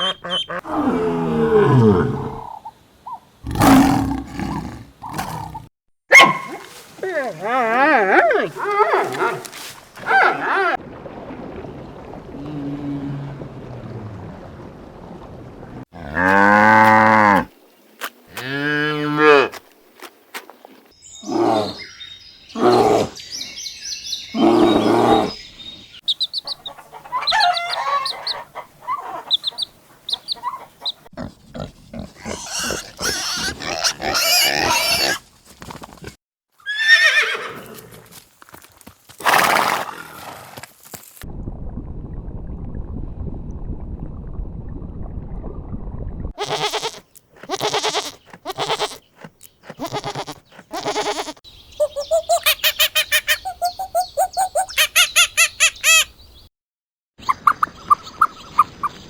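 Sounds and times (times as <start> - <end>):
short evenly spaced calls: 0.0 - 0.6, 26.0 - 31.0, 51.6 - 56.2
farm animal calls: 0.0 - 0.7, 26.1 - 31.0, 31.6 - 35.2, 46.4 - 56.1
low steady rumbling: 41.3 - 46.3.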